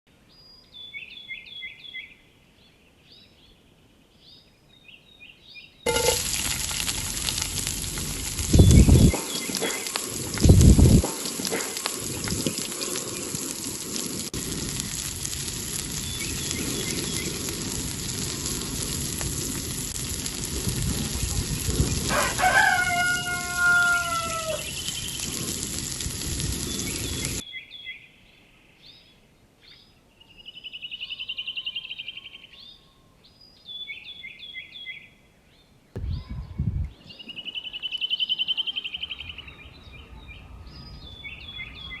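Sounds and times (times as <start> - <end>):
steady broad hiss: 5.9 - 27.4
small birds chirping and trilling: 8.5 - 10.0, 15.8 - 17.7, 21.4 - 25.8, 26.4 - 42.0
long falling bird call: 8.5 - 10.2, 15.6 - 18.4, 21.8 - 25.7.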